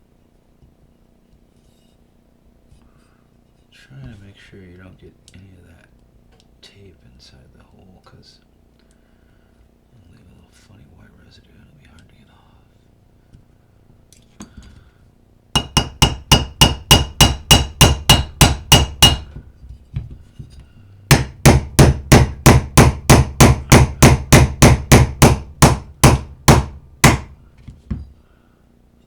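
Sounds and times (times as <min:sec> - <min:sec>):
hammer tapping metal: 0:15.6 - 0:19.5, 0:21.1 - 0:28.0.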